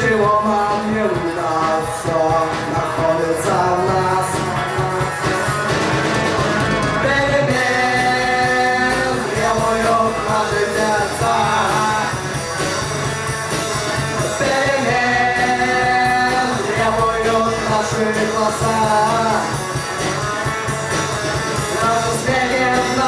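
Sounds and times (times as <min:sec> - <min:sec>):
person singing: 0:00.0 - 0:05.2, 0:07.0 - 0:12.4, 0:14.2 - 0:19.7, 0:21.7 - 0:23.0
drums playing a steady beat: 0:00.0 - 0:23.0
electric guitars: 0:00.0 - 0:23.0.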